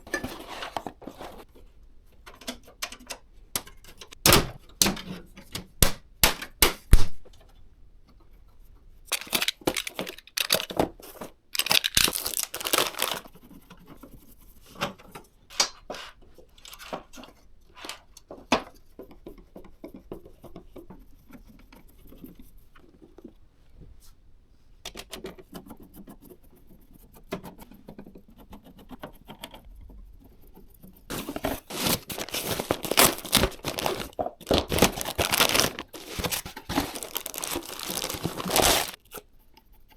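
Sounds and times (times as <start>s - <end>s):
sharp plastic clicks: 9.1s - 10.9s, 11.6s - 13.3s
packaging rustling and crinkling: 9.1s - 13.3s, 31.1s - 39.0s.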